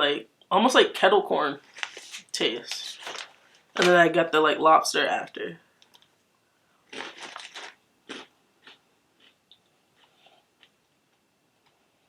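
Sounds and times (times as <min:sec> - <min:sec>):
person chewing crunchy snack: 0:06.8 - 0:10.8.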